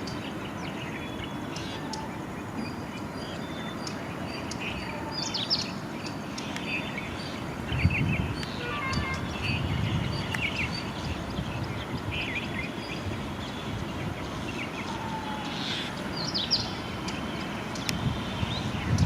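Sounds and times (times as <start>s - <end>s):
birds chirping: 0.0s - 19.0s
steady low rumble: 5.7s - 19.0s.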